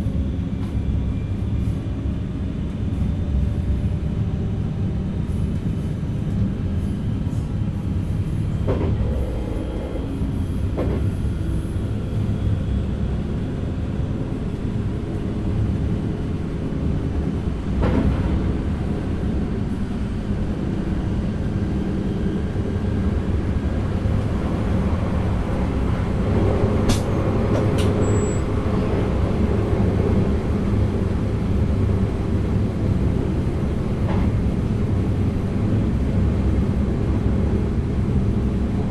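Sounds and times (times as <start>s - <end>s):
train rumbling: 0.0s - 38.9s
brief high beep: 28.0s - 28.4s.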